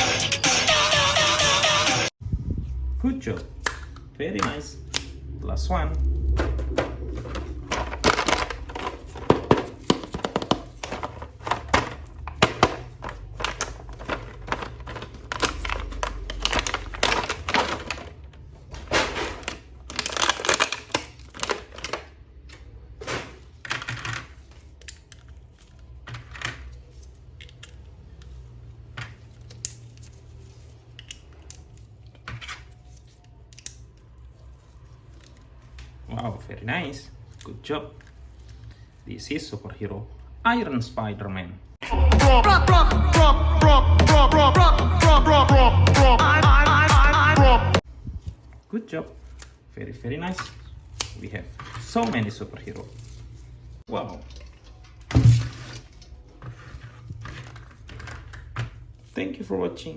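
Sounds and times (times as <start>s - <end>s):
plastic packaging crinkling: 6.2s - 28.2s
plastic toy parts clicking: 33.3s - 34.2s.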